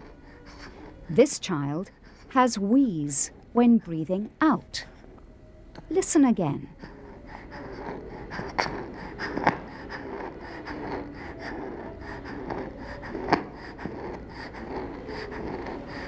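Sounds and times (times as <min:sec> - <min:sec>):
child wheezing breath: 0:06.8 - 0:16.0.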